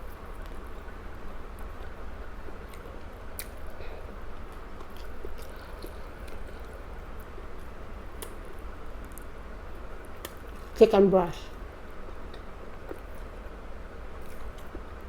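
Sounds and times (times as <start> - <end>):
steady low hum: 0.0 - 15.0
person chewing food: 2.5 - 9.3.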